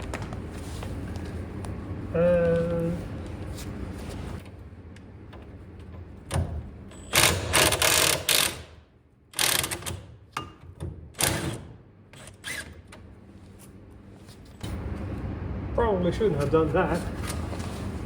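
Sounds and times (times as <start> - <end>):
ratchet wrench clicking: 7.1 - 8.6.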